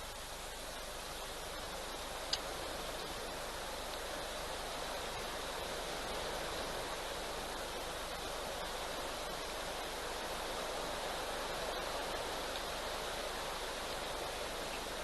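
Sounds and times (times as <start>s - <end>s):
river water rushing: 0.0s - 15.0s
faint ticks: 2.2s - 3.2s, 3.8s - 4.1s, 12.4s - 12.8s.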